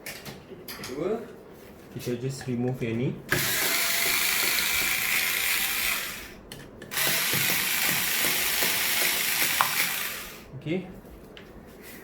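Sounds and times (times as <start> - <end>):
cordless electric screwdriver running: 3.3 - 6.3, 6.9 - 10.4.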